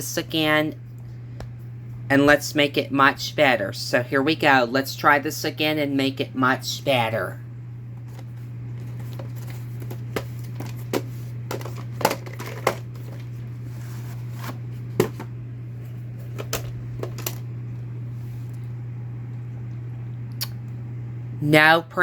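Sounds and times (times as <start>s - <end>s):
low electrical hum: 0.0s - 22.0s.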